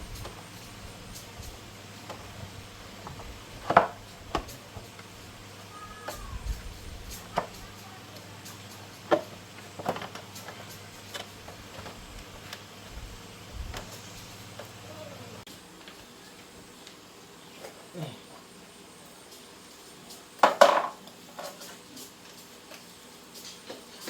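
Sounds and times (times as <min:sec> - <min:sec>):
faint steady hum: 0:00.0 - 0:24.0
sharp knocks and clicks on engine: 0:01.1 - 0:02.4, 0:03.0 - 0:05.1, 0:06.0 - 0:14.8.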